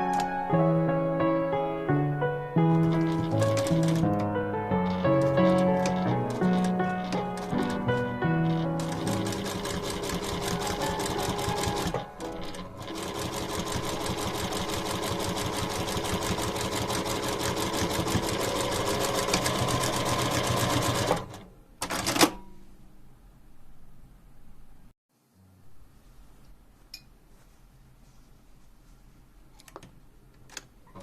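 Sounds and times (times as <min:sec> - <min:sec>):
sewing machine stitching: 0:02.7 - 0:22.3.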